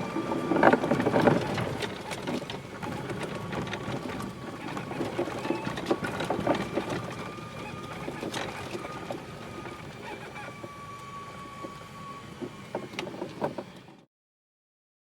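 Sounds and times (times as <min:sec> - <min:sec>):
cart body rattling and knocking: 0:00.0 - 0:10.8
electric motor whine: 0:00.0 - 0:14.0.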